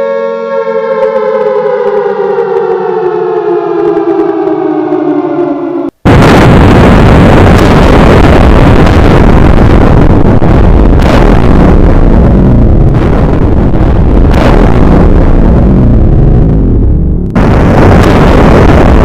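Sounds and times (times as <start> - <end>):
long dense rumble: 1.6 - 19.0
explosion blast: 4.0 - 19.0.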